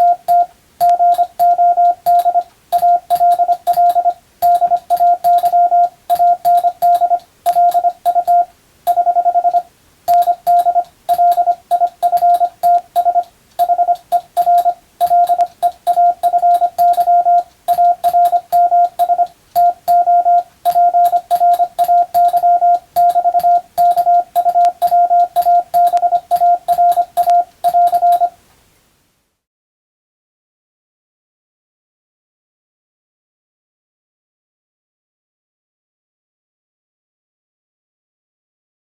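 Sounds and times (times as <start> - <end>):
morse code tone: 0.0 - 28.4.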